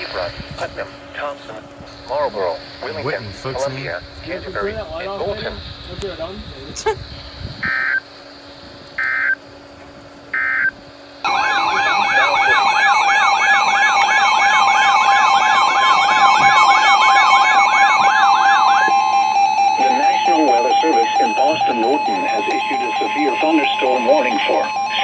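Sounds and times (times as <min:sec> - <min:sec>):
electronic data-burst beeps: 0:07.6 - 0:08.0, 0:09.0 - 0:09.4, 0:10.4 - 0:25.0
warbling electronic alert siren: 0:07.6 - 0:08.1, 0:09.0 - 0:09.4, 0:10.3 - 0:25.0.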